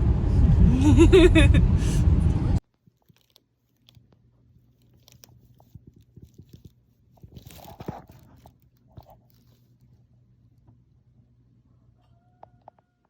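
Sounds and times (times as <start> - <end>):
person chewing food: 2.8 - 9.9.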